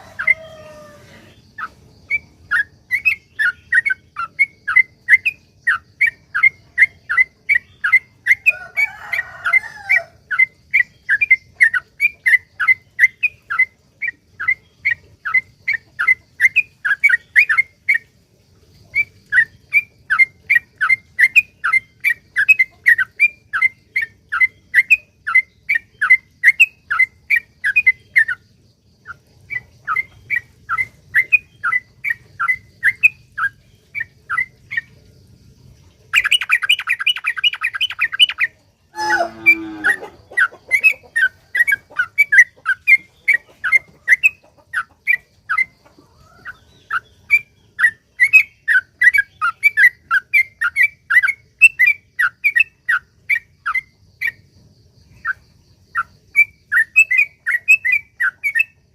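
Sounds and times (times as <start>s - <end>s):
harsh bird call: 38.9s - 41.0s.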